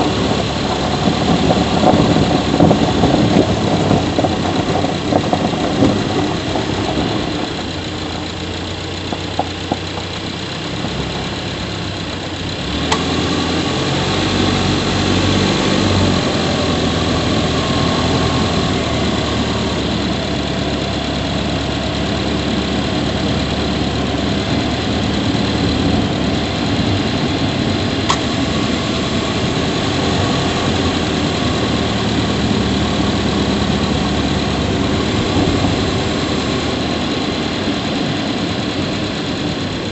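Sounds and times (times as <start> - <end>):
car engine running: 0.0 - 39.9
sharp ticks: 3.1 - 11.0.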